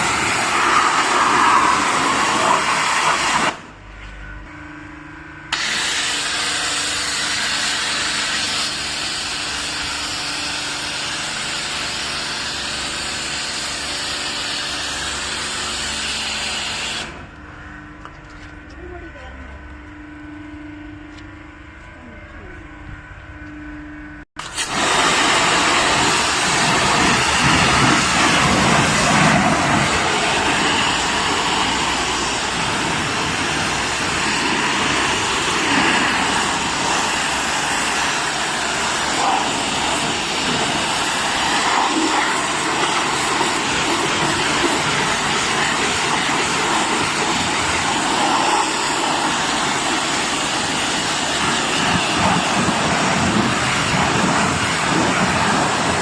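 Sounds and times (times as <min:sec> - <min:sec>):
pressure washer water jet hiss: 0:00.0 - 0:03.7, 0:05.5 - 0:17.2, 0:24.4 - 0:56.0
pressure washer machine running: 0:00.0 - 0:04.1, 0:05.5 - 0:17.4, 0:24.4 - 0:56.0.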